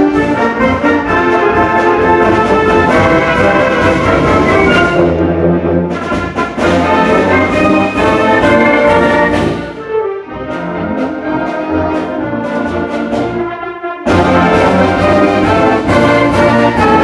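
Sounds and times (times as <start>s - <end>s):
concert band playing a march: 0.0s - 17.0s.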